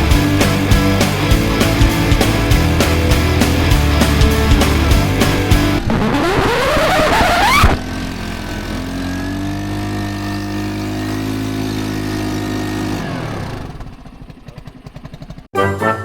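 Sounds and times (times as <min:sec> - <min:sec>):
atv engine running: 0:00.0 - 0:15.5.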